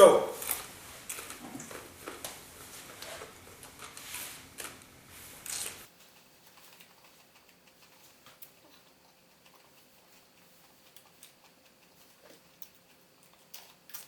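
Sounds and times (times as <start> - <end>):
crunching and chewing cucumber: 5.4 - 14.0.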